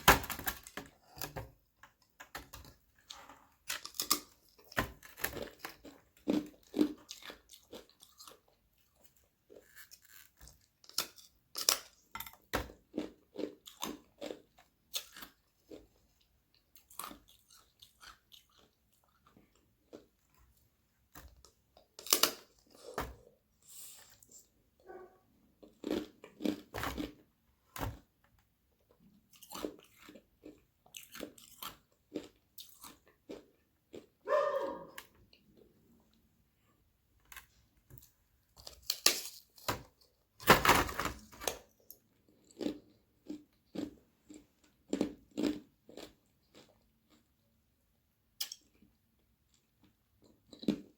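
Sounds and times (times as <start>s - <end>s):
ice being crunched and chewed: 2.3s - 20.6s, 25.6s - 27.3s, 29.0s - 35.7s.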